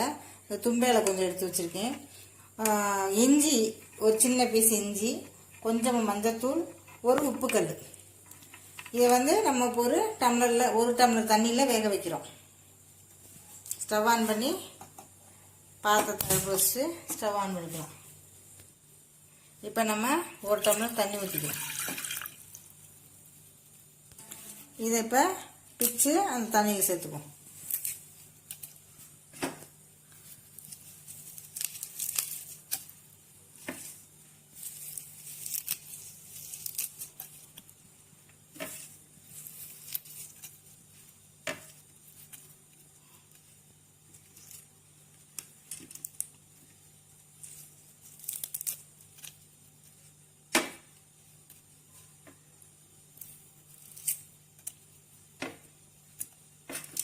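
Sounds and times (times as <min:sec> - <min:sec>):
faint steady hum: 0:00.0 - 0:57.0
herb leaves tearing by hand: 0:27.0 - 0:29.1, 0:30.1 - 0:37.8, 0:38.6 - 0:43.5, 0:44.1 - 0:46.4, 0:47.4 - 0:50.1, 0:53.1 - 0:55.0.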